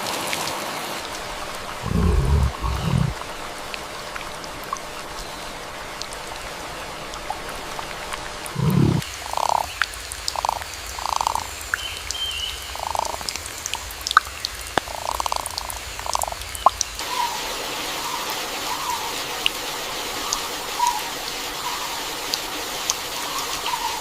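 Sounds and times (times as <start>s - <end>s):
water drips: 0.0s - 17.1s
heavy rain: 0.0s - 24.0s
frog croaking: 1.7s - 3.2s, 8.5s - 11.4s.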